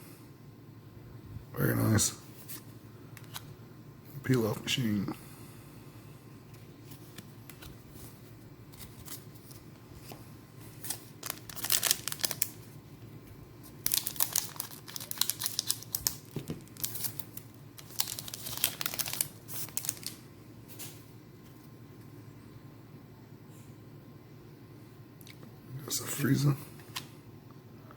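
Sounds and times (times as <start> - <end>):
foil wrapper crinkling and tearing: 10.8 - 12.6, 13.7 - 20.2.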